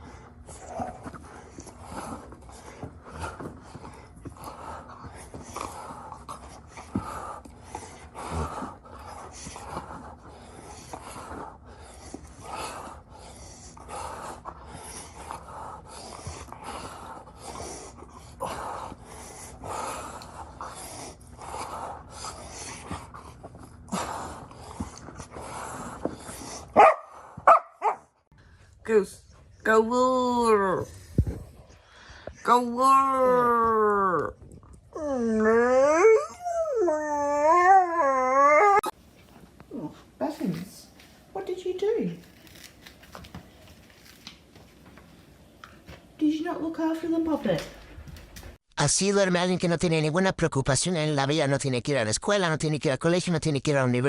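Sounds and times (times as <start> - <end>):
dog snorting and panting: 0.0 - 27.5
steady low hum: 0.0 - 48.6.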